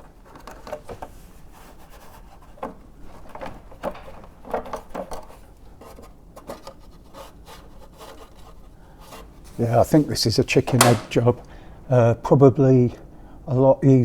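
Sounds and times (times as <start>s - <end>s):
small knocks and clicks: 0.0s - 1.2s, 2.4s - 6.8s, 10.7s - 11.5s
light rubbing: 0.0s - 11.5s.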